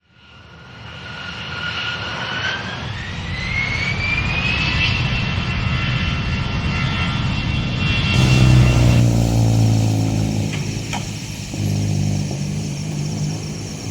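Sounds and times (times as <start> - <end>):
jet engines spooling up: 5.6 - 13.9
low rumble: 8.2 - 13.9.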